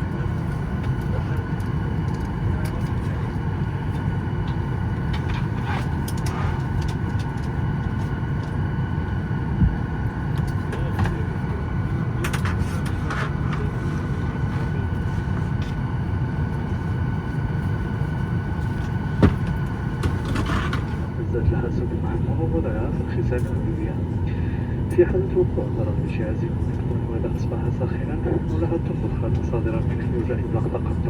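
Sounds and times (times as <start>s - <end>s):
cabin air-conditioning hum: 0.0s - 31.0s
soft thumps: 19.2s - 19.7s.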